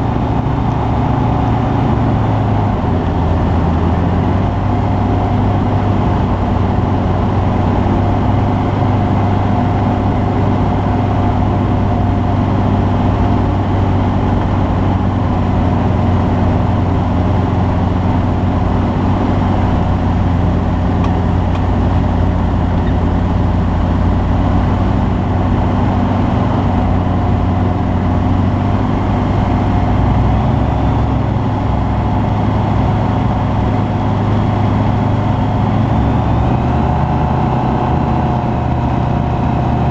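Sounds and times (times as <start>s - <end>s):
aircraft engine and propeller: 0.0s - 39.9s.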